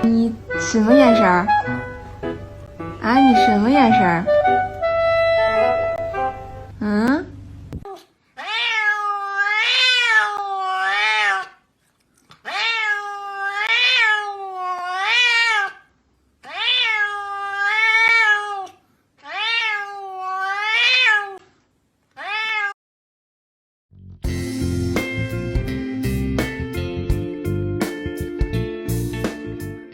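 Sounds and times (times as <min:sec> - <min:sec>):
cat meowing: 0:07.9 - 0:11.6, 0:12.4 - 0:21.4, 0:22.1 - 0:22.8.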